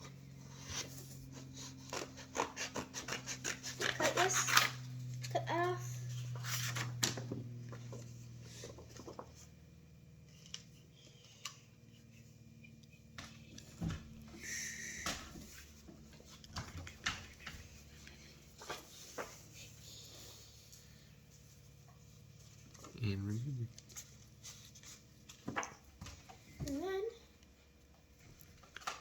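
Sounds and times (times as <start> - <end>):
paper rustling: 0.5 - 5.0, 6.1 - 9.6, 15.6 - 20.6.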